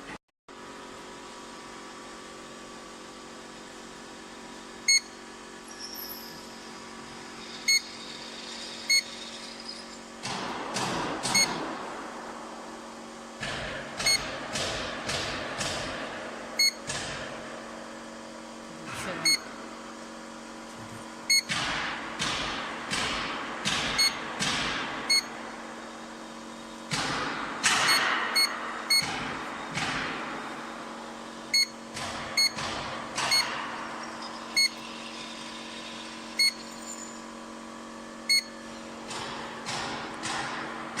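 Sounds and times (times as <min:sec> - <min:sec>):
steady machine hum: 0:00.0 - 0:41.0
control panel beeps: 0:04.9 - 0:05.1, 0:11.3 - 0:11.6, 0:14.0 - 0:14.3, 0:16.6 - 0:16.8, 0:19.2 - 0:19.5, 0:21.3 - 0:21.5, 0:25.1 - 0:25.3, 0:27.9 - 0:29.1, 0:31.5 - 0:31.7, 0:32.4 - 0:32.6, 0:38.3 - 0:38.5.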